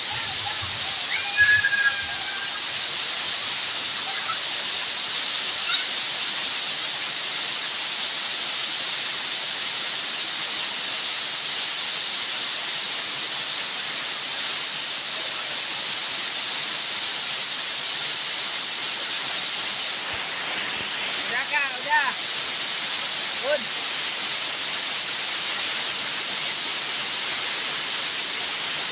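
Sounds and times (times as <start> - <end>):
flowing water rushing: 0.0 - 28.9.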